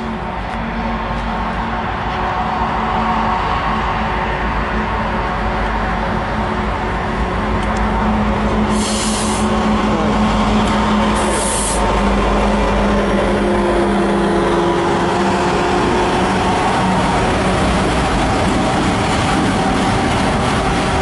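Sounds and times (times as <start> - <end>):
diesel locomotive drone: 0.0 - 21.0
rail and wheel noise: 0.0 - 21.0
short high hisses: 11.2 - 11.9.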